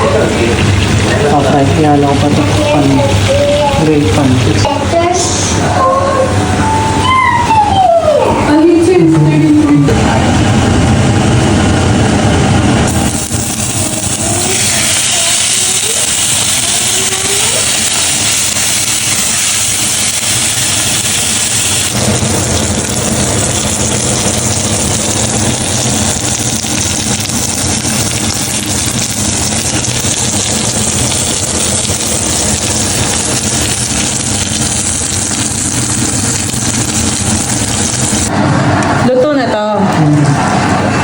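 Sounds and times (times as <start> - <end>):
low mechanical hum: 0.0 - 41.0
steak sizzling on grill pan: 0.7 - 5.2, 12.9 - 38.3.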